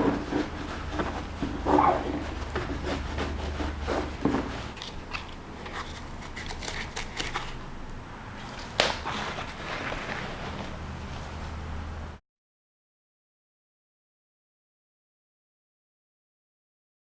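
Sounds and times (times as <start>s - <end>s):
objects being handled: 0.0s - 7.8s, 8.4s - 11.6s.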